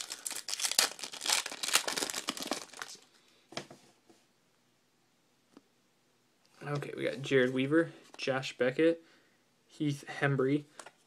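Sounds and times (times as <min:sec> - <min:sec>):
wrapper crinkling and tearing: 0:00.0 - 0:03.1.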